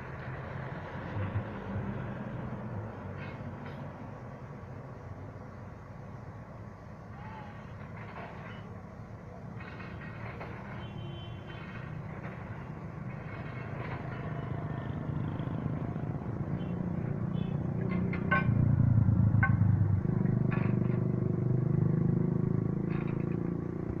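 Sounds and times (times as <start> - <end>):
heavy diesel engine running: 0.0 - 24.0
short metallic clanks: 3.1 - 4.2, 7.6 - 8.8, 17.8 - 18.8, 20.2 - 21.3, 22.8 - 23.6.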